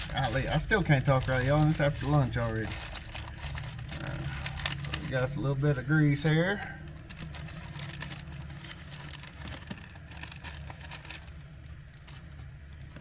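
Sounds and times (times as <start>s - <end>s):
steady low hum: 0.0s - 13.0s
small clicks and rustling: 6.9s - 13.0s.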